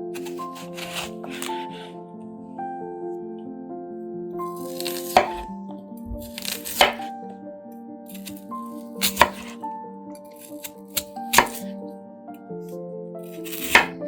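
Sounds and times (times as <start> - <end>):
gentle background music: 0.0 - 14.0
knife cutting on board: 0.2 - 1.9, 4.6 - 5.5, 6.1 - 7.1, 8.1 - 8.4, 9.0 - 9.6, 10.5 - 11.7, 13.3 - 14.0.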